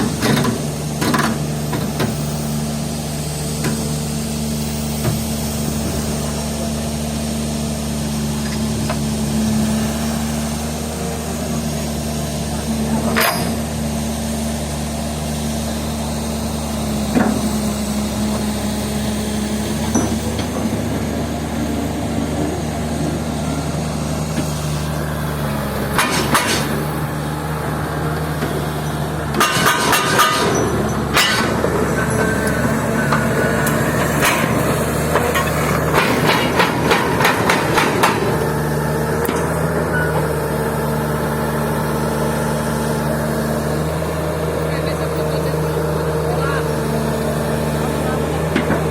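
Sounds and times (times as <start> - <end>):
diesel excavator engine running: 0.0 - 48.9
metallic clanks and knocks: 25.9 - 26.8, 29.3 - 38.4.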